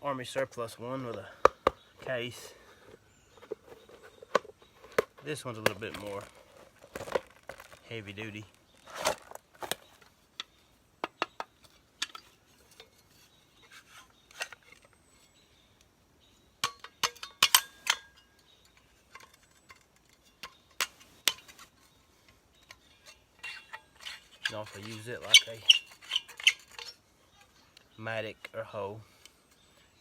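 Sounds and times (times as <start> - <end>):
metal tool clicking and clinking: 16.6 - 21.5.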